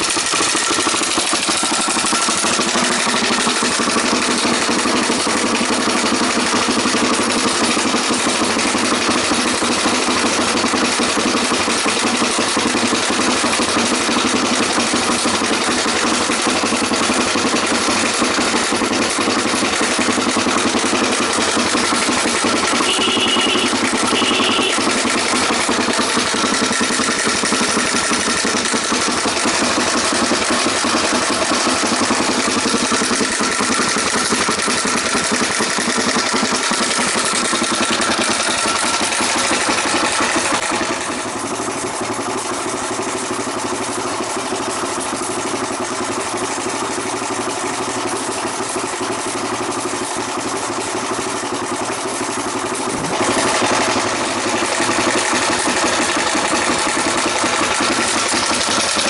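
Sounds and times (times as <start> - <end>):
motorcycle engine idling: 0.0 - 59.0.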